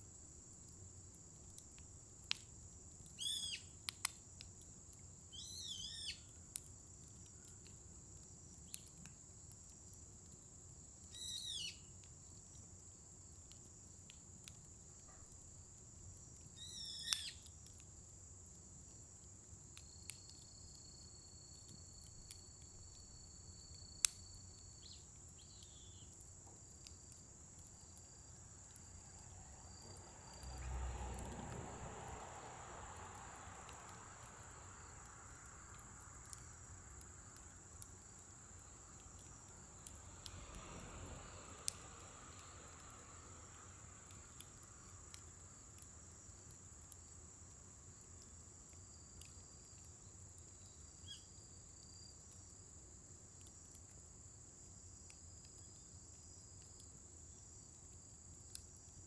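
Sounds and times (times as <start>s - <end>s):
fire crackling and popping: 0.0s - 59.0s
high insect trill: 2.8s - 3.8s, 5.2s - 6.4s, 10.6s - 13.8s, 15.4s - 17.6s, 19.8s - 48.0s, 48.8s - 53.1s.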